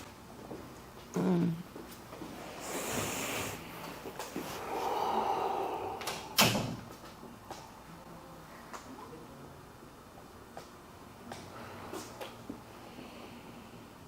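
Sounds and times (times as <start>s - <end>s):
long breaths out: 4.5s - 6.4s.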